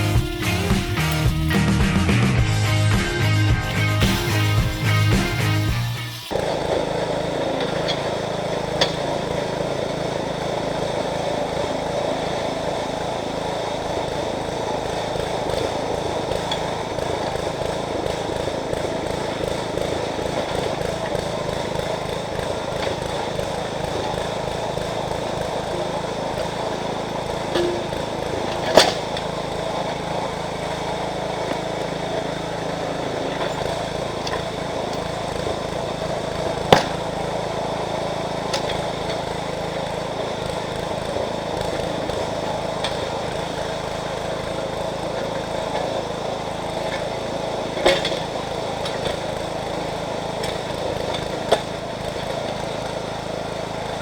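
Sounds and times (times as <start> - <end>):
backhoe engine running: 0.0 - 54.0
sharp knocks: 27.5 - 29.3, 36.7 - 37.1.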